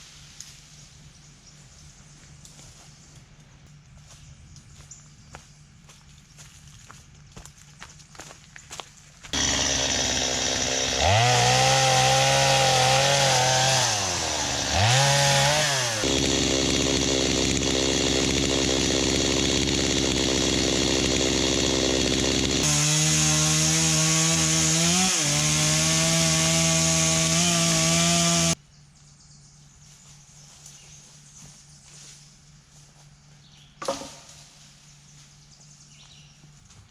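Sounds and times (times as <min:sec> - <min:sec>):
chainsaw cutting wood: 0:09.3 - 0:28.6, 0:33.8 - 0:34.4.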